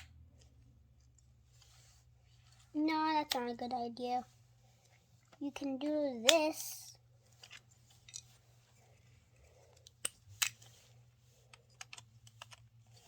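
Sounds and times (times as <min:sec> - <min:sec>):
plastic toy pieces clicking together: 0:11.7 - 0:12.7.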